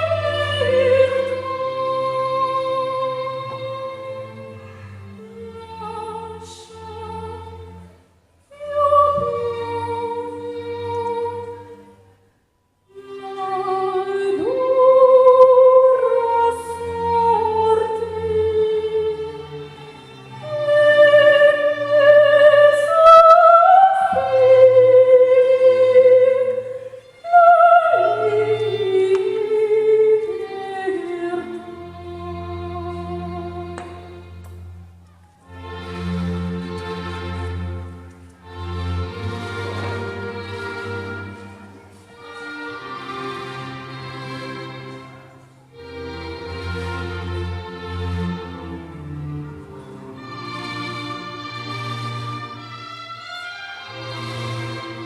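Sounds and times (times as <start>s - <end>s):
low instrumental accompaniment: 30.2s - 55.0s.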